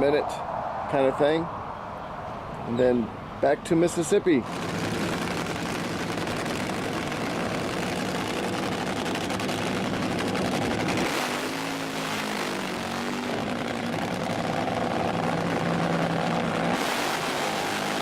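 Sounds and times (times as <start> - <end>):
road noise: 0.0 - 18.0
vehicle engine running: 4.4 - 18.0.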